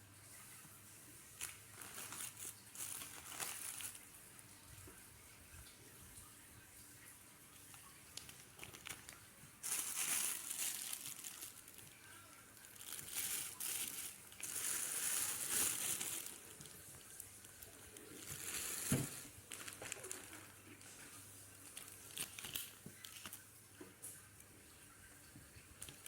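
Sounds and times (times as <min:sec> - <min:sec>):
plastic bags crinkling: 0:01.2 - 0:04.9, 0:07.6 - 0:24.2.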